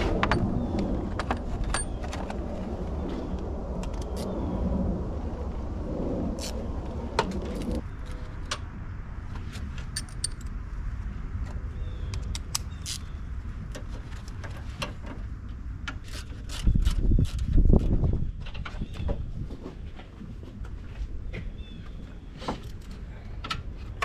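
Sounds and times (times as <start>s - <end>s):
steady low rumble: 0.0s - 14.4s.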